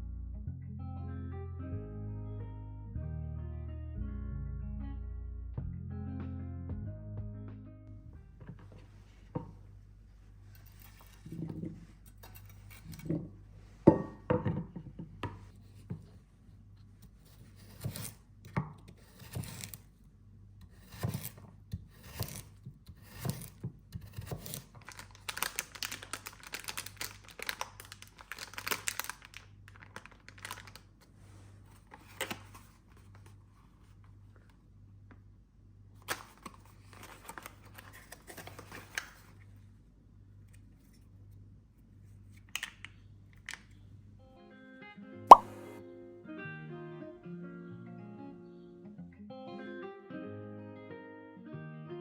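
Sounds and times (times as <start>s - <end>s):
crinkly material rustling and tearing: 24.5s - 33.3s, 36.1s - 39.4s.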